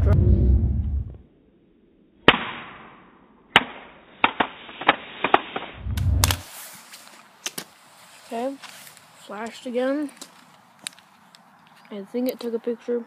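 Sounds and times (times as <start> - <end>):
muffled low rumble: 0.0 - 1.2, 5.8 - 6.4.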